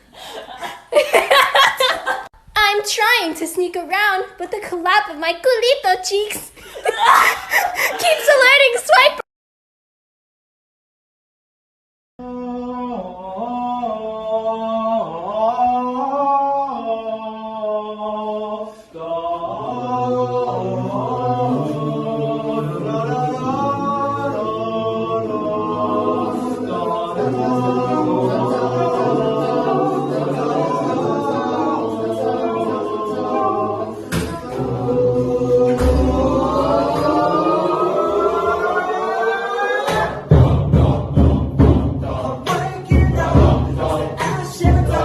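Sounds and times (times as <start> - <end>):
voices singing a cappella: 12.2 - 45.0.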